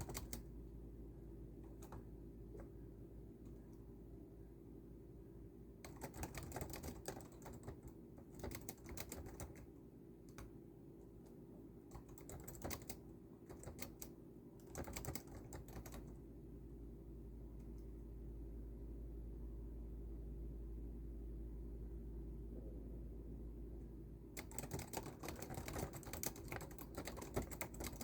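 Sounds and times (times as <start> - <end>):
typing on computer keyboard: 0.0 - 0.5, 1.6 - 2.7, 5.8 - 10.5, 11.2 - 16.2, 24.4 - 28.0
steady low hum: 0.0 - 28.0.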